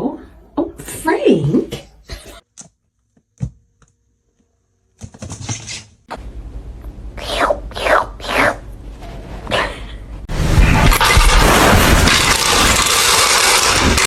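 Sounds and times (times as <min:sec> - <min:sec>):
steady low hum: 0:06.1 - 0:14.0.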